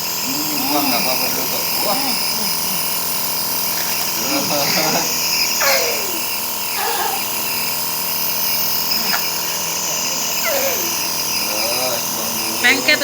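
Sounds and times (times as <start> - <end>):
nebulizer compressor humming: 0.0 - 13.0
short falling vocal sounds: 4.1 - 7.3.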